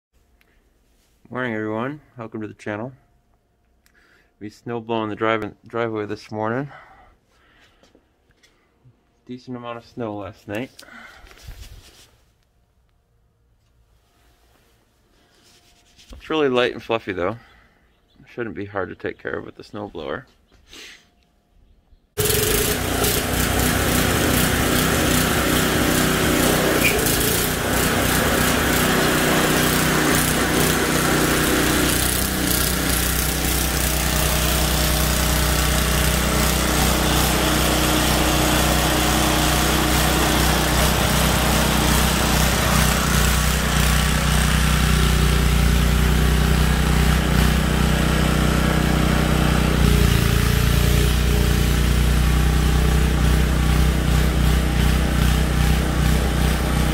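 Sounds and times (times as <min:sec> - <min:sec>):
snow blower engine running: 0:22.2 - 0:56.9.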